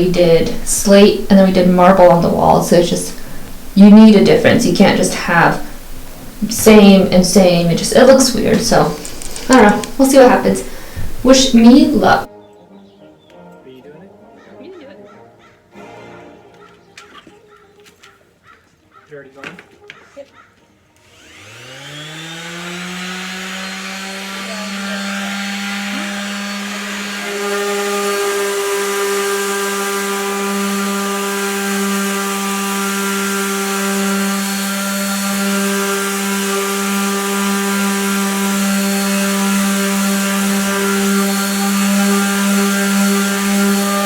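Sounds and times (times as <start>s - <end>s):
power tool motor whining: 4.6s - 12.3s, 21.0s - 44.0s.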